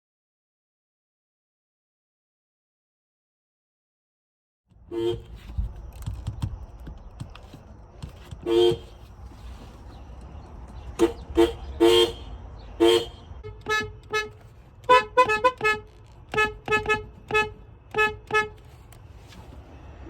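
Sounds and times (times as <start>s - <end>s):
car horn toots: 4.8s - 5.8s, 8.3s - 9.2s, 10.8s - 18.8s.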